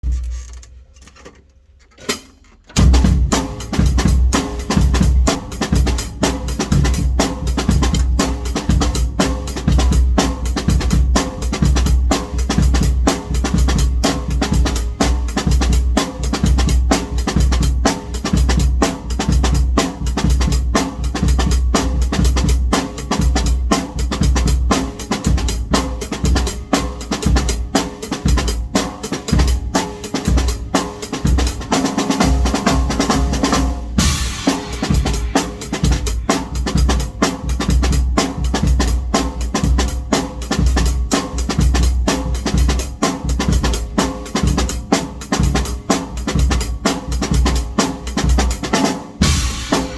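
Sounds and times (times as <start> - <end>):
drum kit groove: 1.9 - 49.9
crash cymbal: 34.0 - 36.9, 49.2 - 49.9.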